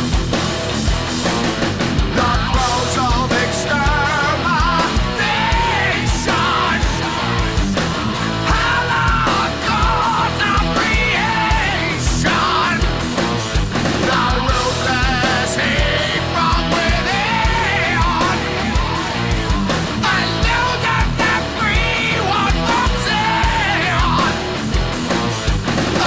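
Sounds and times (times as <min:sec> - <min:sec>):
electric guitar: 0:00.0 - 0:26.0
steady drum beat: 0:00.0 - 0:26.0
person singing: 0:02.2 - 0:13.0, 0:14.0 - 0:19.3, 0:20.0 - 0:24.4.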